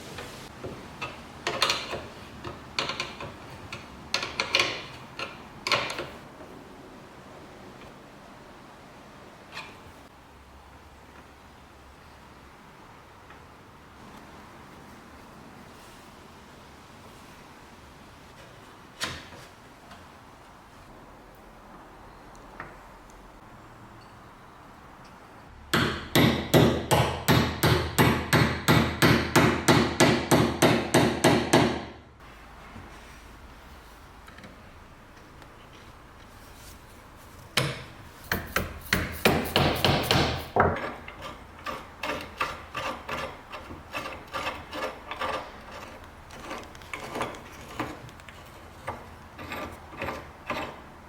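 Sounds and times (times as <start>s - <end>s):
hammer striking: 25.7s - 31.9s, 37.6s - 45.4s.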